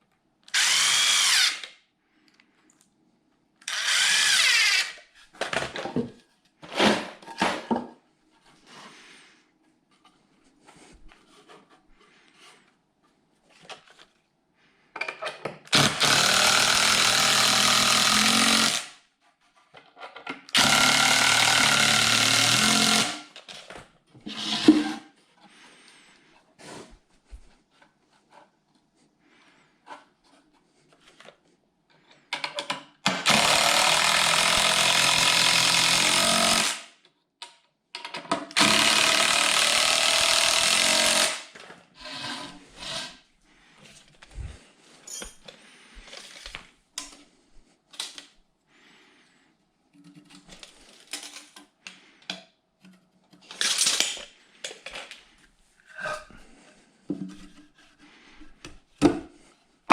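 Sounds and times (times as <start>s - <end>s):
handheld power tool running: 0.5s - 1.7s, 3.7s - 5.0s, 15.7s - 18.9s, 20.5s - 23.4s, 33.2s - 36.9s, 38.6s - 41.5s.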